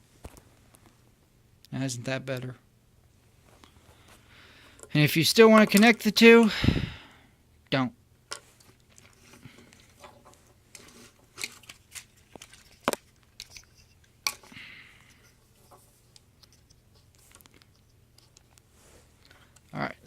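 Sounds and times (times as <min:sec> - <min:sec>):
soft rustle: 0:03.2 - 0:04.3, 0:15.0 - 0:20.0
plastic toy parts clicking: 0:05.5 - 0:06.2.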